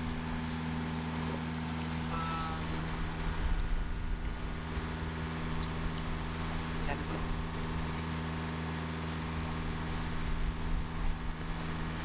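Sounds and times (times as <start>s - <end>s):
boat engine hum: 0.0s - 12.0s
faint tone: 2.1s - 2.7s.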